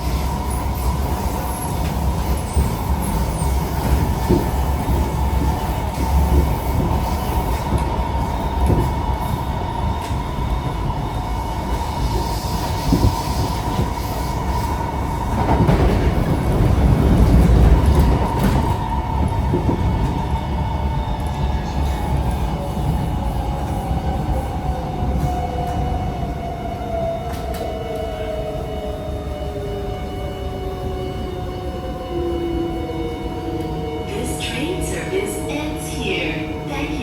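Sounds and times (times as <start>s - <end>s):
metro car running rumble: 0.0s - 37.0s.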